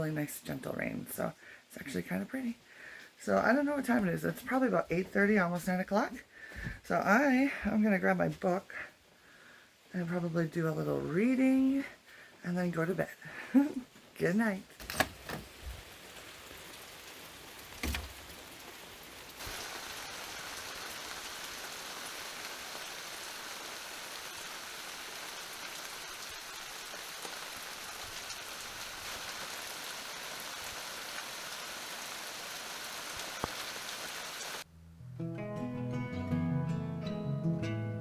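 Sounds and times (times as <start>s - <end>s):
rain pattering: 13.2s - 14.2s, 15.2s - 34.7s.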